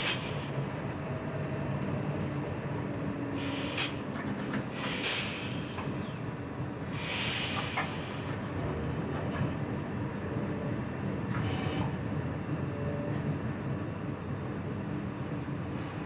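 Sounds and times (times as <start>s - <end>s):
train wheels rumbling: 0.0s - 11.4s
short hiss: 3.4s - 4.0s, 4.7s - 5.8s, 6.9s - 8.2s.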